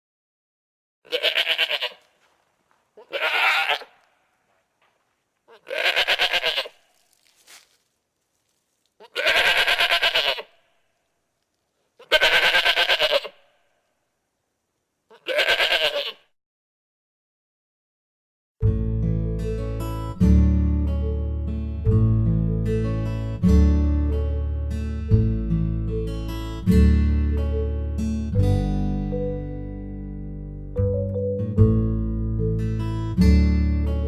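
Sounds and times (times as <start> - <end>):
goat bleating: 1.1 - 2.2, 3.0 - 4.2, 5.5 - 7.2, 9.0 - 10.6, 12.0 - 13.5, 15.1 - 16.3.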